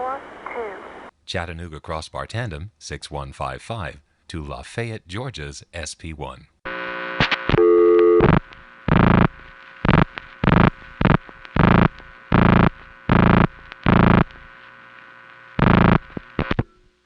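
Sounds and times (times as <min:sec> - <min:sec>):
low hum: 0:06.7 - 0:17.0.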